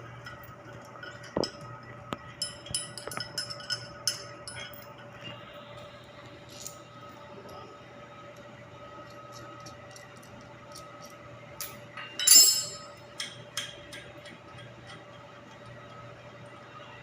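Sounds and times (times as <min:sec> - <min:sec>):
steady mechanical hum: 0:00.0 - 0:17.0
metal clinking: 0:02.4 - 0:05.0, 0:09.1 - 0:15.6
ringing metal clatter: 0:11.6 - 0:13.4.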